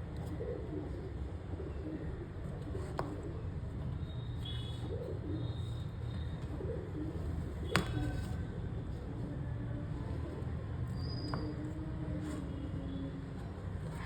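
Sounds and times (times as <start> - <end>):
pigeons cooing: 0.2 - 3.6, 4.6 - 8.3.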